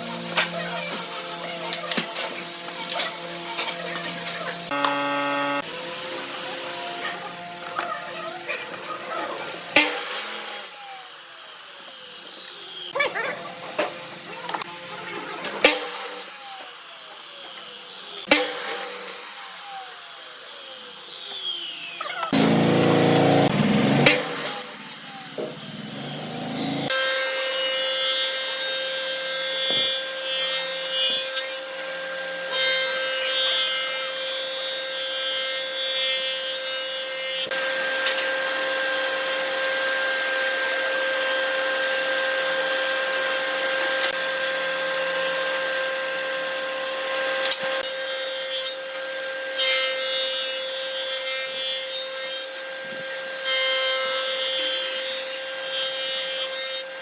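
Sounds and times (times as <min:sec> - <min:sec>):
power tool motor whine: 0:01.6 - 0:07.8, 0:19.3 - 0:27.3.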